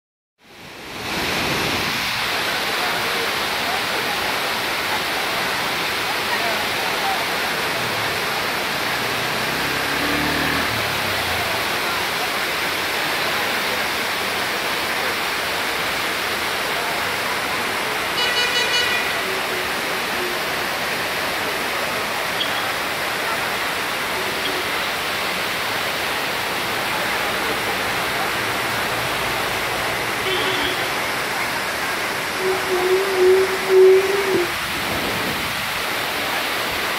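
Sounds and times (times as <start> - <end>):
waterfall roaring: 0.5 - 36.9
vehicle horn honking: 18.2 - 19.2, 30.2 - 31.0, 32.4 - 34.5.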